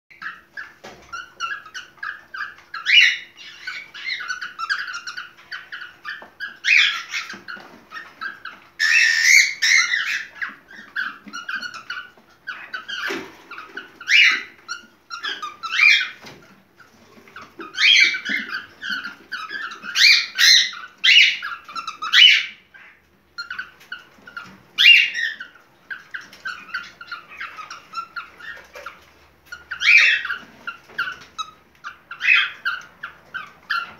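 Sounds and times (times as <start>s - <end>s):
cockatiel chirping and warbling: 0.1s - 33.9s.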